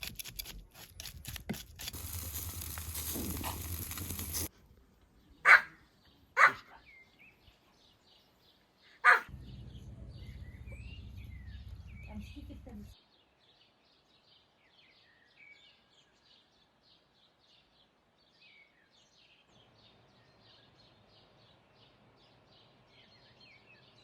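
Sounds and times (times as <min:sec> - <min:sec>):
steady hiss: 0:02.0 - 0:04.5
small birds chirping: 0:02.0 - 0:24.0
dog barking: 0:05.4 - 0:05.8, 0:06.4 - 0:06.8, 0:09.0 - 0:09.3.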